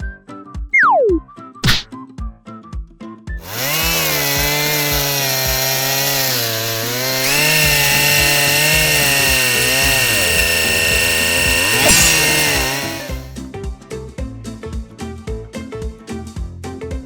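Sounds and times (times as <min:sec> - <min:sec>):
cartoon music with beat: 0:00.6 - 0:02.0
buzzing motor sound effect: 0:03.4 - 0:13.3.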